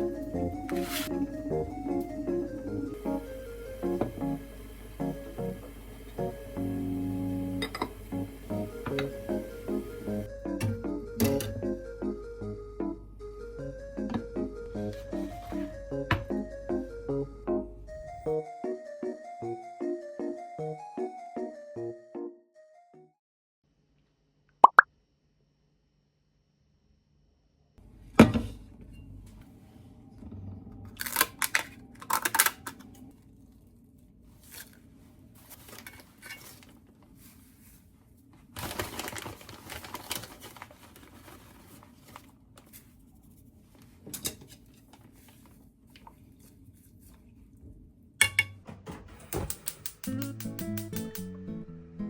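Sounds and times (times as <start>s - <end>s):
guitar music: 0.0s - 12.2s, 50.0s - 52.0s
dishes and utensils clinking: 7.6s - 8.1s
rustling tearing noise: 34.3s - 43.6s.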